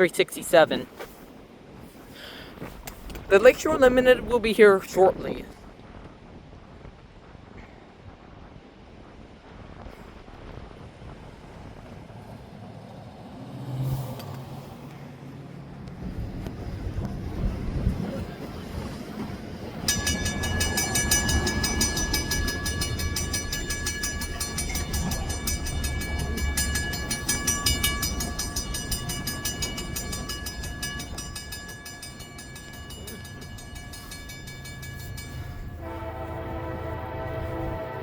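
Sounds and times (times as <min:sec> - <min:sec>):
freight train rumble: 0:00.0 - 0:38.0
crossing bell ringing: 0:19.6 - 0:38.0
train horn chord: 0:35.5 - 0:38.0.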